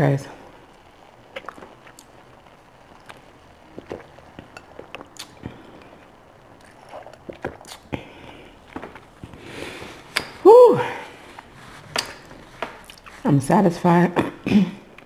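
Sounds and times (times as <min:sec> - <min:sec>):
person chewing: 0:01.3 - 0:02.2, 0:03.0 - 0:10.4, 0:11.2 - 0:13.2.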